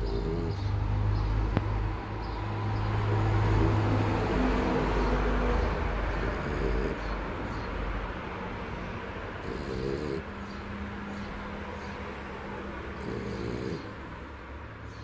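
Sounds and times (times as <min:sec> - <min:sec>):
small dog snoring: 0:00.0 - 0:00.7, 0:02.8 - 0:05.4, 0:06.0 - 0:07.7, 0:09.4 - 0:10.6, 0:12.9 - 0:14.3.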